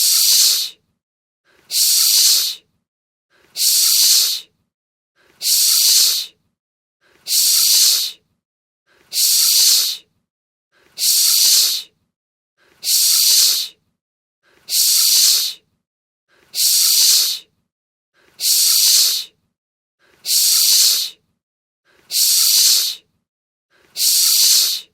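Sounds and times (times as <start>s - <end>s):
sharp high-pitched hiss: 0.0s - 0.7s, 1.7s - 2.6s, 3.6s - 4.4s, 5.4s - 6.3s, 7.3s - 8.2s, 9.2s - 10.0s, 11.0s - 11.9s, 12.9s - 13.7s, 14.7s - 15.6s, 16.6s - 17.4s, 18.4s - 19.3s, 20.3s - 21.1s, 22.1s - 23.0s, 24.0s - 24.9s.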